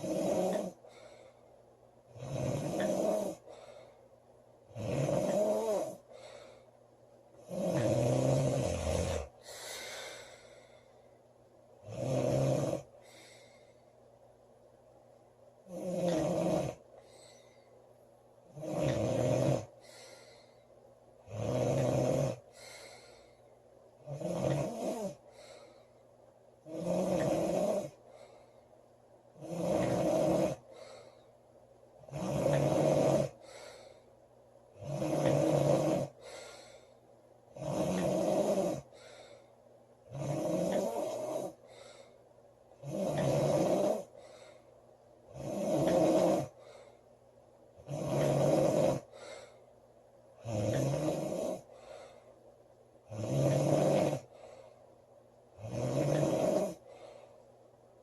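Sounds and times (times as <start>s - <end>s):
girl snoring loudly: 0.0s - 0.8s, 2.2s - 3.5s, 4.7s - 6.0s, 7.5s - 10.3s, 11.8s - 12.9s, 15.7s - 16.8s, 18.6s - 19.7s, 21.3s - 22.4s, 24.1s - 25.2s, 26.7s - 28.0s, 29.4s - 30.6s, 32.1s - 33.4s, 34.8s - 36.2s, 37.6s - 38.9s, 40.1s - 41.6s, 42.8s - 44.1s, 45.3s - 46.6s, 47.8s - 49.1s, 50.4s - 51.7s, 53.1s - 54.3s, 55.6s - 56.8s
short breath: 0.8s - 1.5s, 3.5s - 4.1s, 6.1s - 6.8s, 9.4s - 11.2s, 13.0s - 14.0s, 19.8s - 20.8s, 22.5s - 23.6s, 25.2s - 26.0s, 28.1s - 28.8s, 30.7s - 31.4s, 33.4s - 34.2s, 36.2s - 37.0s, 38.9s - 39.6s, 41.6s - 42.2s, 44.1s - 44.8s, 46.6s - 47.1s, 49.1s - 49.7s, 51.7s - 52.4s, 54.3s - 54.9s, 56.8s - 57.5s.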